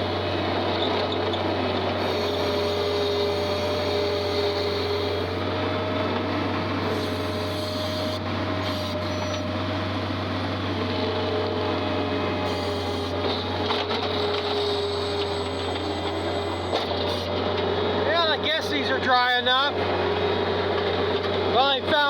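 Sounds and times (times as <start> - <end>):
skid steer engine running: 0.0 - 22.0.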